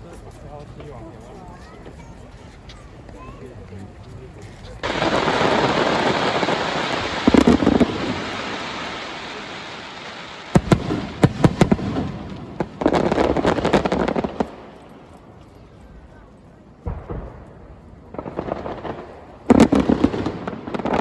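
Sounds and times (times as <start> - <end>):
fireworks crackling: 2.9 - 21.0
fireworks bangs: 4.8 - 16.1, 16.8 - 21.0.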